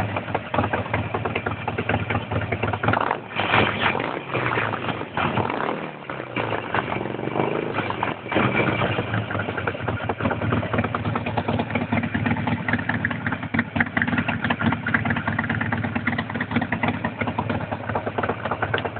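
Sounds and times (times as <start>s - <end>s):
motorcycle engine idling: 0.0s - 18.9s.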